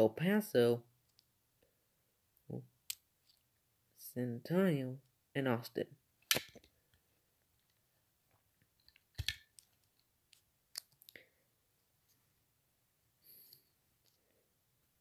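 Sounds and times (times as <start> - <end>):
sharp clicks and taps: 8.8 - 11.2.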